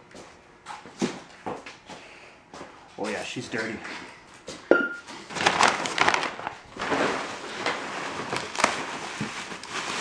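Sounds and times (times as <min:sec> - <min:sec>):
packaging crinkling and rustling: 0:05.1 - 0:10.0.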